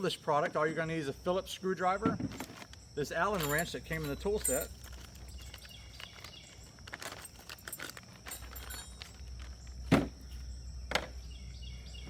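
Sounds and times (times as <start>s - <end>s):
plastic parts clicking and rustling: 2.3s - 10.0s.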